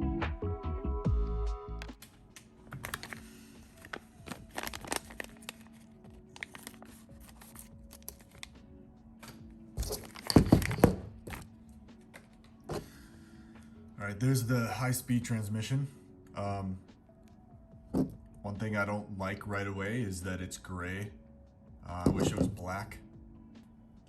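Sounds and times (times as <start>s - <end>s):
crinkly rustling: 2.7s - 8.6s, 9.8s - 11.5s.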